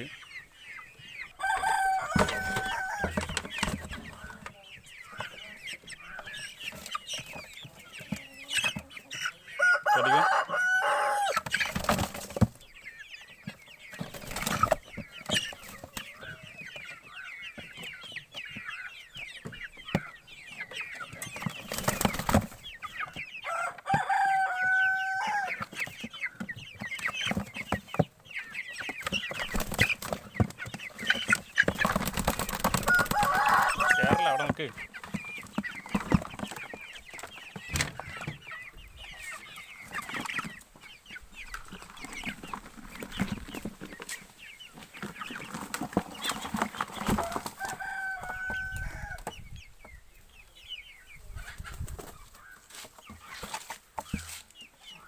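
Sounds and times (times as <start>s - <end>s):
chickens peeping and clucking: 0.0s - 55.0s
rooster crowing: 1.4s - 3.3s, 9.6s - 11.4s, 23.4s - 25.6s, 32.8s - 34.6s, 47.2s - 49.2s
wings flapping: 21.6s - 22.6s, 29.2s - 30.3s, 31.1s - 34.2s.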